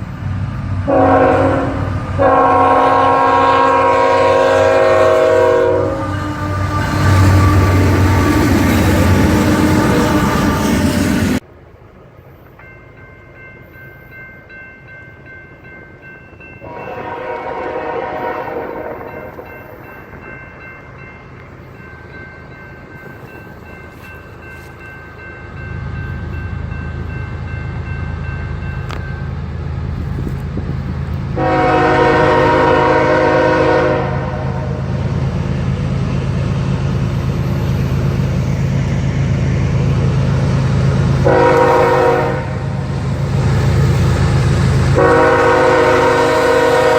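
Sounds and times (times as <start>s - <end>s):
train rumble: 0.0s - 46.9s
locomotive air horn blasts: 0.9s - 11.3s, 16.6s - 19.4s, 31.4s - 34.9s, 41.2s - 42.8s, 45.0s - 46.9s
crossing bell ringing: 12.2s - 30.1s, 31.0s - 46.9s.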